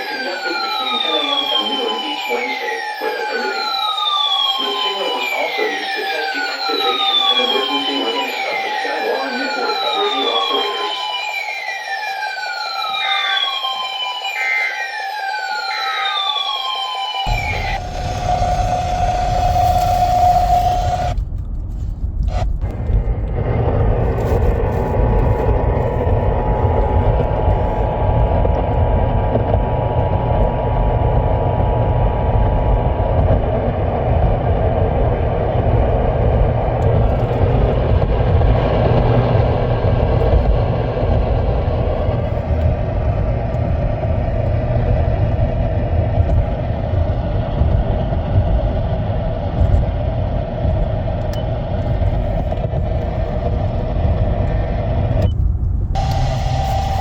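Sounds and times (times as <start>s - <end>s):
heavy steady noise: 17.3s - 57.0s.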